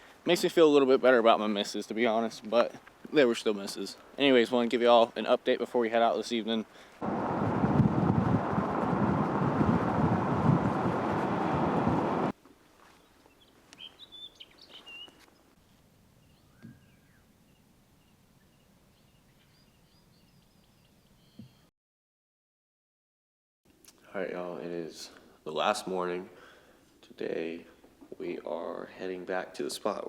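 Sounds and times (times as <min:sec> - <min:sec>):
wind buffeting the microphone: 0:07.0 - 0:12.3
faint bird chirps: 0:13.0 - 0:15.5, 0:16.2 - 0:21.7.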